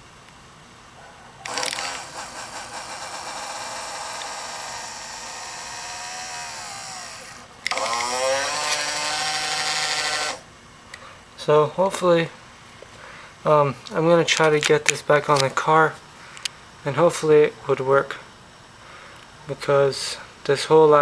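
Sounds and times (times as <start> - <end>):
small electric motor whining: 1.4 - 10.5.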